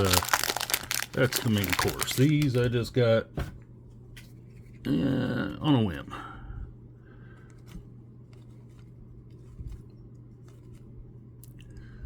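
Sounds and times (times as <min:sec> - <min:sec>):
foil card pack rustling: 0:00.0 - 0:02.9
steady low hum: 0:00.0 - 0:12.0.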